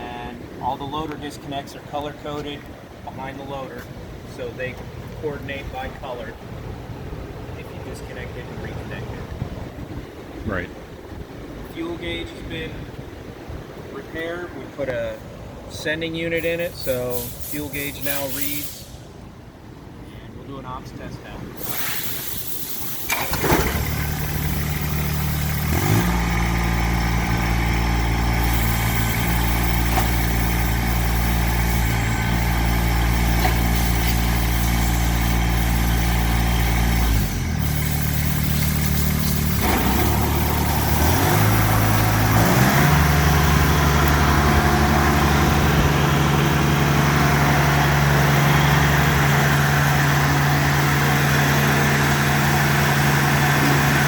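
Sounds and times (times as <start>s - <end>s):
tractor diesel engine running: 21.6s - 54.0s.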